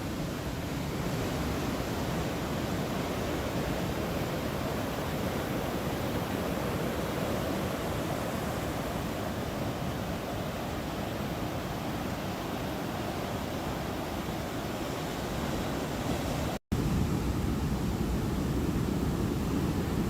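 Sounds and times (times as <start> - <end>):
ocean surf: 0.0 - 20.0
wind: 0.0 - 20.0.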